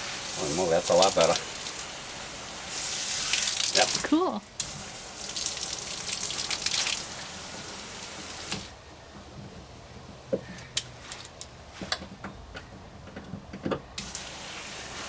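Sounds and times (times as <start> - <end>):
water dripping: 0.0 - 8.7
shower spraying water: 0.0 - 8.8, 14.0 - 15.0.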